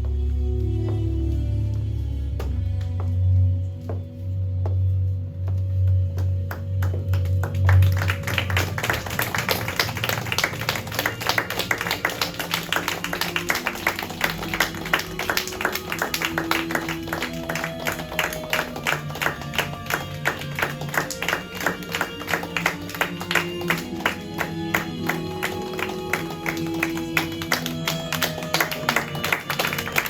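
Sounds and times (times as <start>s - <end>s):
held musical notes: 0.0s - 30.0s
music with deep low tone: 0.0s - 30.0s
audience applause: 6.5s - 30.0s.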